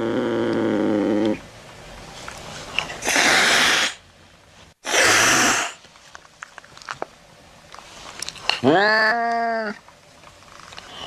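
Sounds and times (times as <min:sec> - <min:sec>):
cat hissing: 0:03.0 - 0:04.0, 0:04.8 - 0:05.8.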